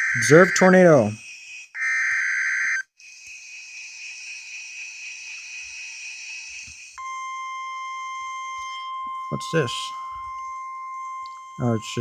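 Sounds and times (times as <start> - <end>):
steady warning alarm tone: 0.0 - 12.0.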